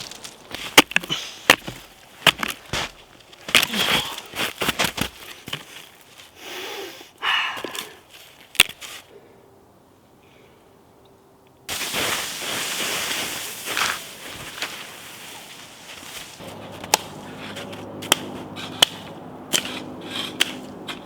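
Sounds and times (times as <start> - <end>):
dry wood snapping: 0.0 - 5.7, 8.5 - 8.8, 16.4 - 21.0
rustling and crunching: 0.0 - 6.4, 11.7 - 21.0.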